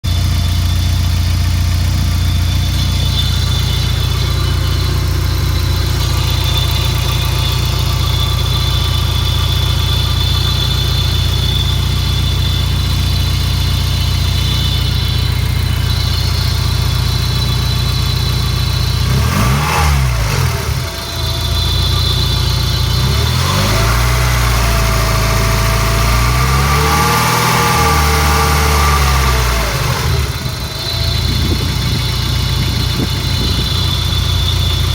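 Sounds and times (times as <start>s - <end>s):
car engine idling and revving: 0.0s - 34.9s
high thin whine: 2.0s - 16.9s.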